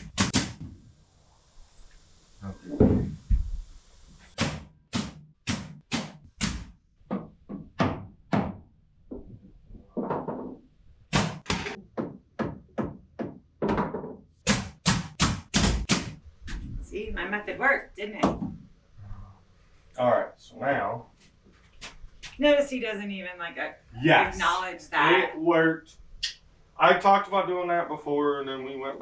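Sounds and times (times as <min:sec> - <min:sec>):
hammer striking nails: 0:00.0 - 0:00.8, 0:04.3 - 0:08.7, 0:11.1 - 0:16.2.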